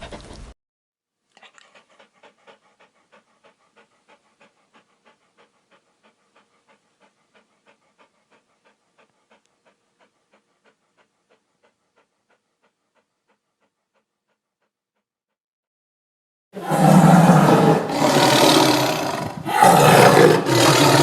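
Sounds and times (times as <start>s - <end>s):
dog panting: 0.0s - 0.6s, 1.3s - 15.1s, 16.8s - 21.0s.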